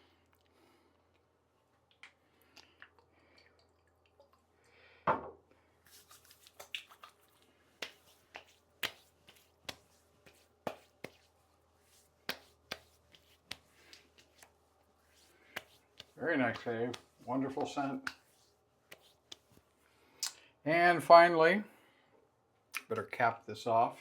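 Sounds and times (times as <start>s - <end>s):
hands patting face: 7.8s - 20.4s.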